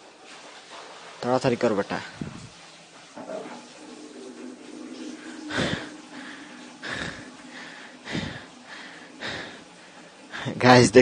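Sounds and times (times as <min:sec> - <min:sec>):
person breathing hard: 0:05.3 - 0:10.6.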